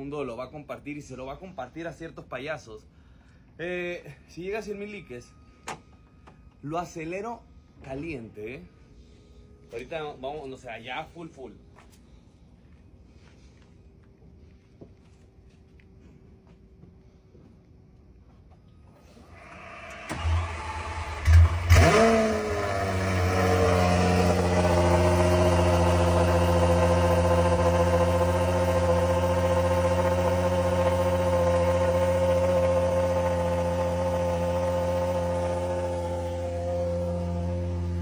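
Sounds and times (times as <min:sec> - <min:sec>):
starter motor cranking: 0:19.0 - 0:38.0
car engine revving and idling: 0:19.4 - 0:38.0.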